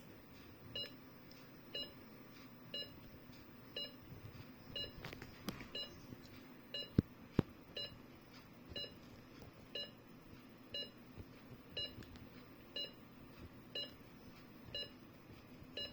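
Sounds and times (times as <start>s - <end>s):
patient monitor beeping: 0.5s - 1.0s, 1.6s - 7.0s, 7.7s - 8.0s, 8.7s - 9.0s, 9.7s - 10.0s, 10.7s - 11.0s, 11.8s - 12.1s, 12.7s - 13.1s, 13.7s - 15.0s.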